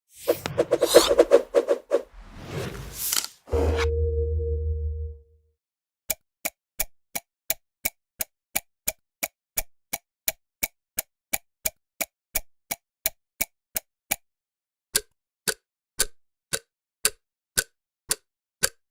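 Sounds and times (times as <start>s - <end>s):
low tone: 3.5s - 5.4s.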